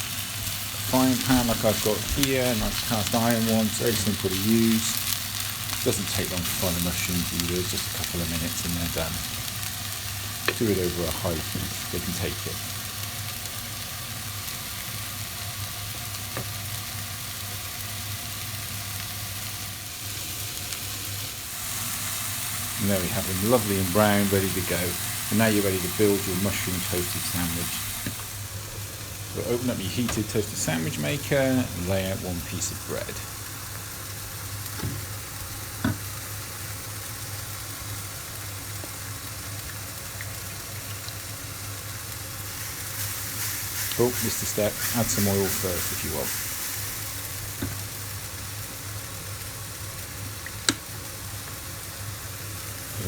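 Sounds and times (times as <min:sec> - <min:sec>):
food sizzling in frying pan: 0:00.0 - 0:53.0.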